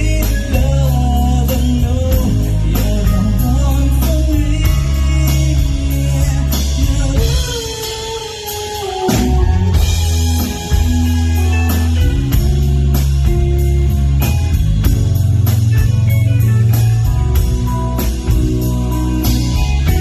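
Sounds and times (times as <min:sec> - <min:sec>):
person singing: 0:00.0 - 0:12.6
live band playing ballad: 0:00.0 - 0:20.0.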